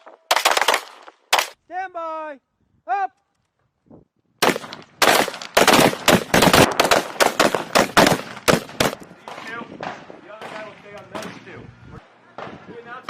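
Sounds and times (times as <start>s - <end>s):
rifle shots with echo: 4.4s - 11.3s.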